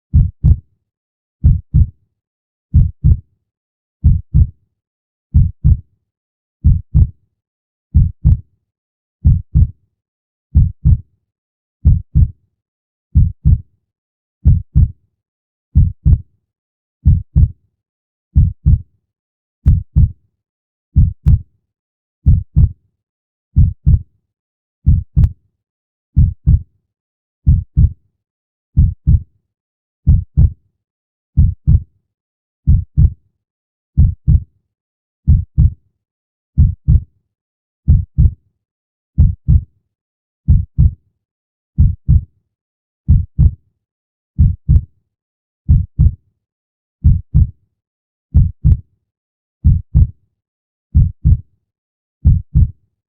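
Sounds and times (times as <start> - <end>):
heartbeat thumps: 0.1 - 0.6, 1.4 - 1.9, 2.8 - 3.2, 4.0 - 4.5, 5.4 - 5.8, 6.6 - 7.1, 8.0 - 8.4, 9.2 - 9.7, 10.6 - 11.0, 11.8 - 12.3, 13.2 - 13.6, 14.4 - 14.9, 15.8 - 16.2, 17.0 - 17.5, 18.4 - 18.8, 19.7 - 20.1, 21.0 - 21.4, 22.3 - 22.7, 23.6 - 24.0, 24.9 - 25.3, 26.2 - 26.6, 27.5 - 27.9, 28.8 - 29.2, 30.1 - 30.5, 31.4 - 31.8, 32.7 - 33.1, 34.0 - 34.4, 35.3 - 35.7, 36.6 - 37.0, 37.9 - 38.3, 40.5 - 40.9, 41.8 - 42.2, 43.1 - 43.5, 44.4 - 44.8, 45.7 - 46.1, 47.0 - 47.5, 48.3 - 48.8, 49.6 - 50.1, 51.0 - 51.4, 52.2 - 52.7.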